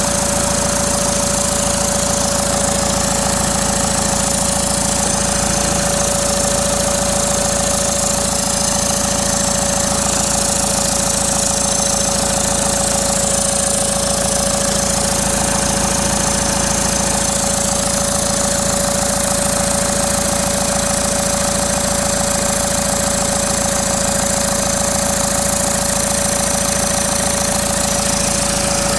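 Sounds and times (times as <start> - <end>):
diesel engine idling: 0.0 - 19.7, 25.9 - 28.9.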